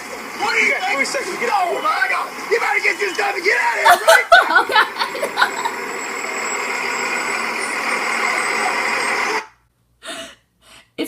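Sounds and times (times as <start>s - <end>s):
bus engine running: 0.0s - 9.5s.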